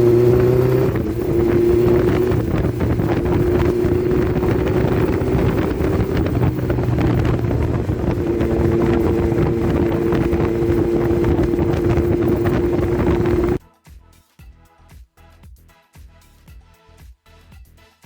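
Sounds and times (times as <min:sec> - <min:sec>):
motorcycle engine running: 0:00.0 - 0:13.6
wind buffeting microphone: 0:00.0 - 0:13.6.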